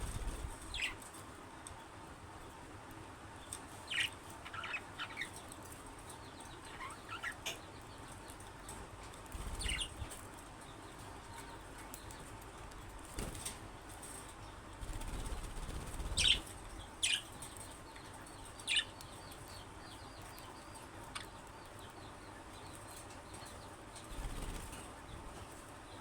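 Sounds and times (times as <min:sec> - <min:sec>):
faint rapid bird chirps: 0:00.0 - 0:01.0, 0:09.3 - 0:12.3, 0:14.4 - 0:26.0.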